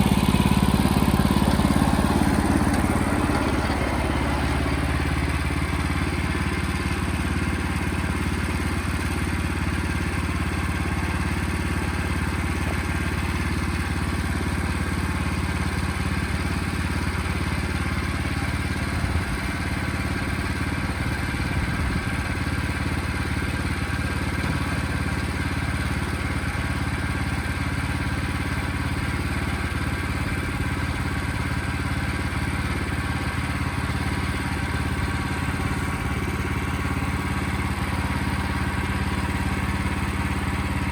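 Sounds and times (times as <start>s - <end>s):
sawmill engine running: 0.0s - 40.9s.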